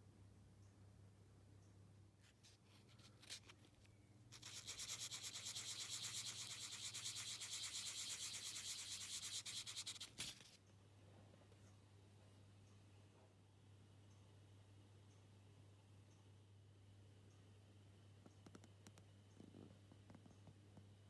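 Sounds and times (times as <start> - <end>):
hand sanding strokes: 4.4 - 10.4.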